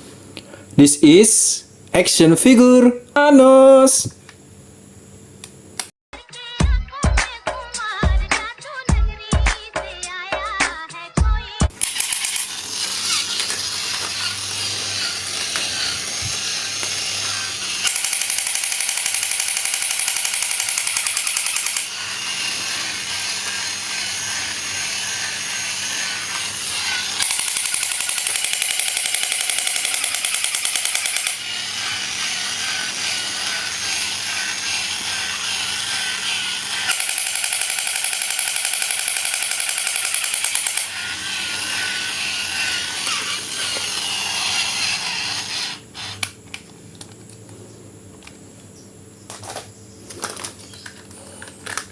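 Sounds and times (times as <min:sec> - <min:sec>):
small motor tool running: 0:11.7 - 0:46.4.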